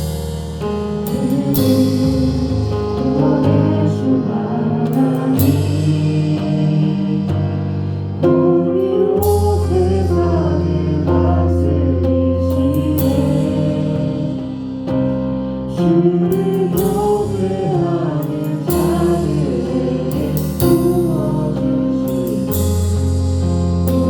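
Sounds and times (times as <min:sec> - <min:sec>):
cymbal crashes: 0:00.0 - 0:04.2
worship band playing: 0:00.0 - 0:24.0
people singing: 0:01.0 - 0:14.6, 0:15.7 - 0:22.9.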